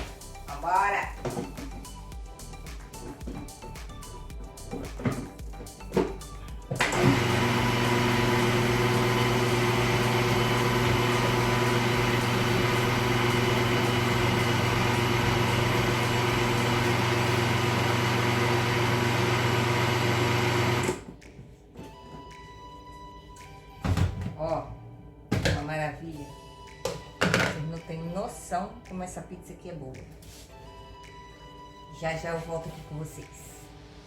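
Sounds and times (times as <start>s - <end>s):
electric blender running: 6.7s - 21.1s.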